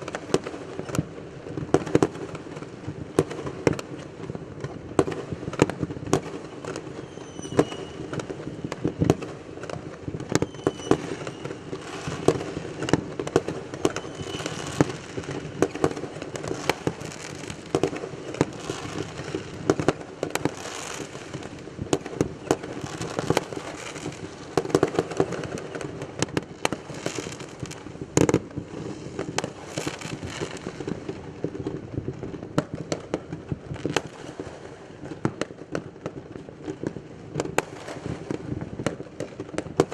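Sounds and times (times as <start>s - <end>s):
fireworks bangs and crackling: 0.0s - 39.9s
rocket whistles: 6.8s - 8.7s, 10.3s - 12.3s, 13.7s - 15.0s.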